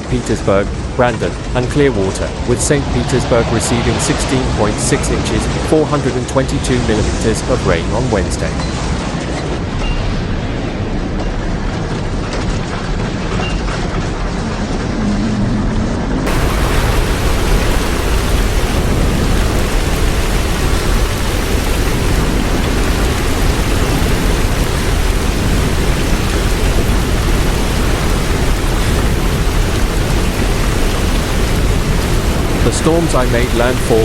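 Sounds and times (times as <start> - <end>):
hurricane wind: 0.0 - 34.0
heavy rain: 16.2 - 34.0.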